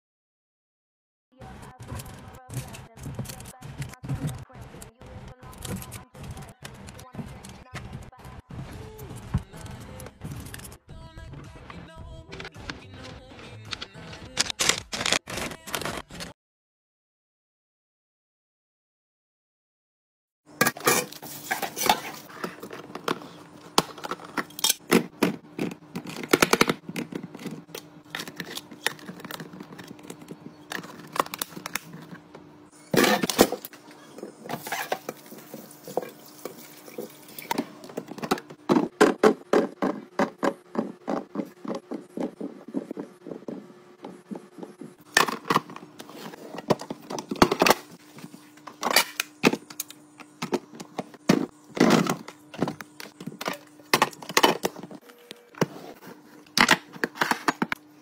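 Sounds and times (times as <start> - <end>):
containers clicking and knocking: 20.6 - 32.2, 35.9 - 47.9
steady low hum: 20.6 - 58.0.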